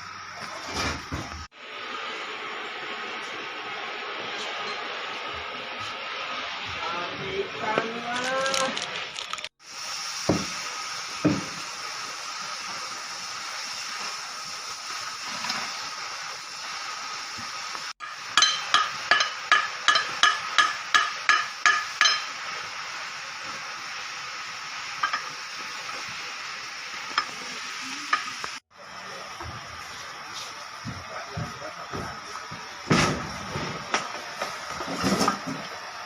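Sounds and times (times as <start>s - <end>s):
steady hiss: 9.3s - 36.0s
hammer striking metal: 18.0s - 22.4s.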